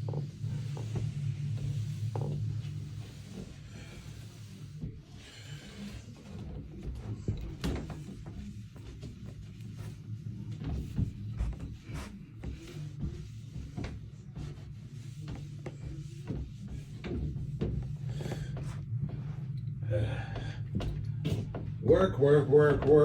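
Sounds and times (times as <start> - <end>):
cloth rubbing polish on wood: 0.0 - 6.9, 7.9 - 19.4
knocks and scrapes of wooden frame: 5.7 - 19.3.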